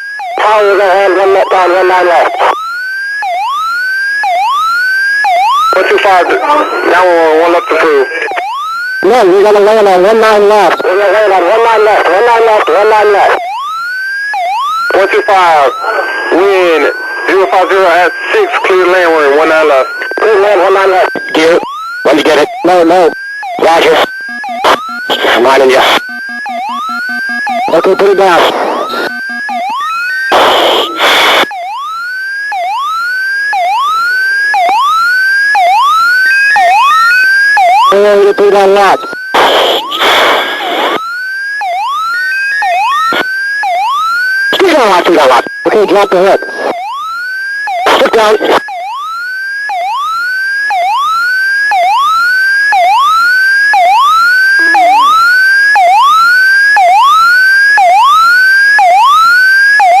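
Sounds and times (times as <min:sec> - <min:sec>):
cockpit warning tone: 0:00.0 - 0:13.7, 0:14.3 - 1:00.0
rising whooping warning tone: 0:54.4 - 0:55.5.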